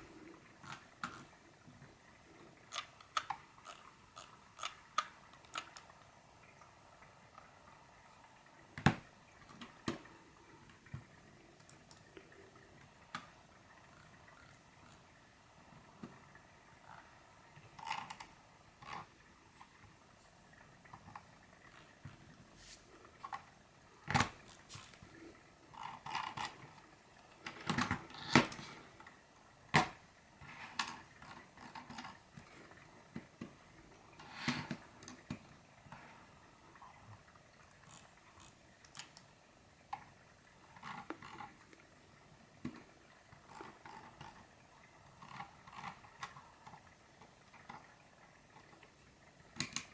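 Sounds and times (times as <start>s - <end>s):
mouse scroll wheel ticking: 2.7s - 5.9s.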